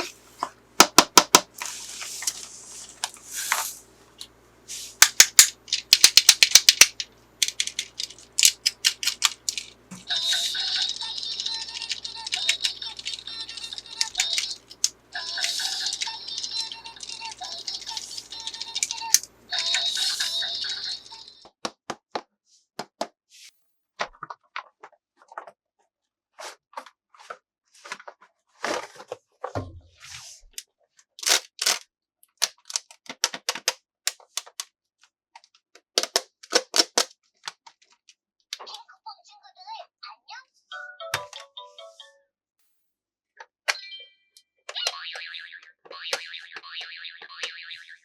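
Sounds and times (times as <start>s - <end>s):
plastic toy pieces clicking: 4.7s - 21.0s, 31.2s - 34.7s, 35.8s - 37.6s
tinny electronic toy tune: 40.7s - 42.3s.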